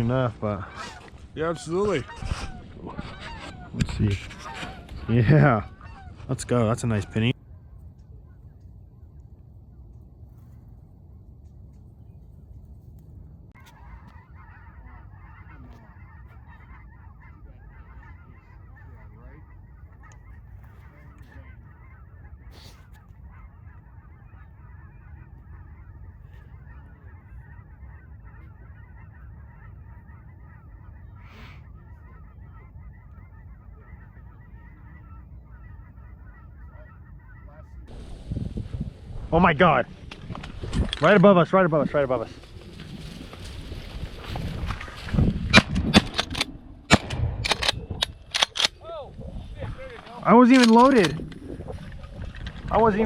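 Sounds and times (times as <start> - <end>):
geese honking: 0.0 - 7.4, 13.5 - 53.0
low rumble: 37.8 - 53.0.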